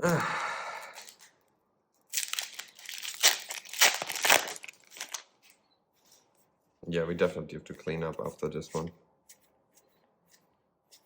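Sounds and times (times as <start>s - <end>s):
plastic wrapper tearing and crinkling: 0.9s - 1.3s, 2.1s - 5.6s.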